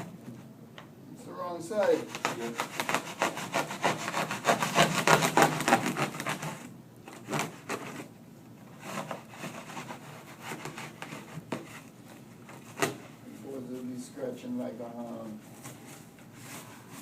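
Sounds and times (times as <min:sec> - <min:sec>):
hand sawing strokes: 0:01.8 - 0:06.7, 0:08.7 - 0:11.8.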